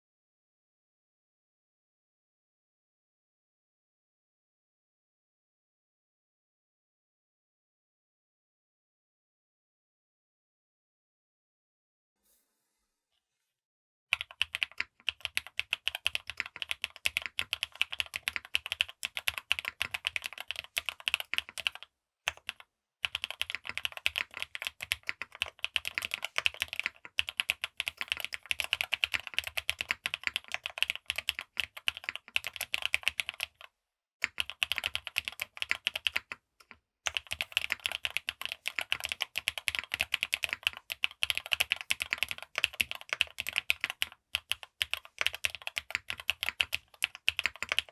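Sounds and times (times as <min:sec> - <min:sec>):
mechanical keyboard typing: 0:14.1 - 0:47.9.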